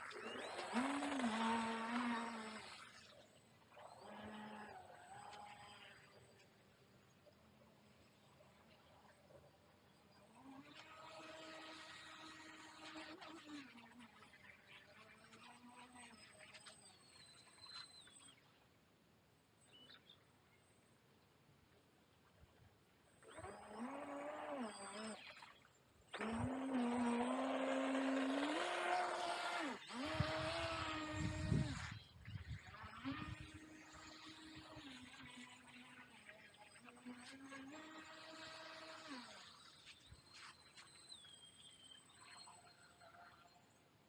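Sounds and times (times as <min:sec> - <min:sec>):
electric motor whining: 0:00.0 - 0:03.1, 0:03.9 - 0:06.2, 0:10.2 - 0:13.6, 0:23.2 - 0:25.3, 0:26.1 - 0:39.9.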